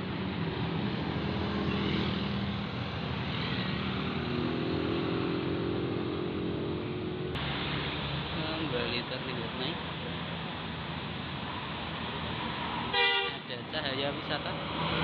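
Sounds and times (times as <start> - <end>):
bus diesel engine under load: 6.6 - 15.0.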